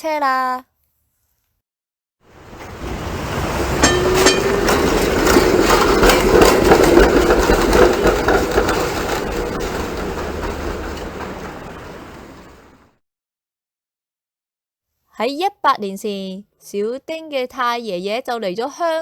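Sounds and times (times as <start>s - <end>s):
tram motor hum: 2.3s - 12.9s
tram wheel clatter: 2.3s - 12.9s.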